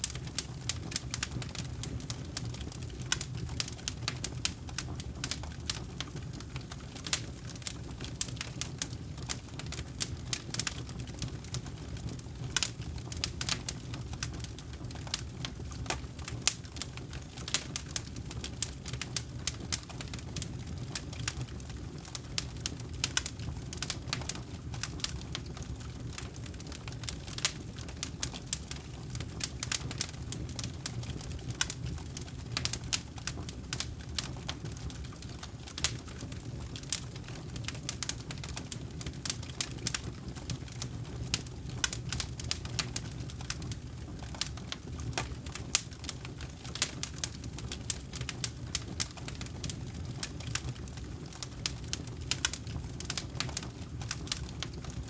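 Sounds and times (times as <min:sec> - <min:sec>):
campfire crackles and pops: 0:00.0 - 0:55.0
low rumble of flames: 0:00.0 - 0:55.0.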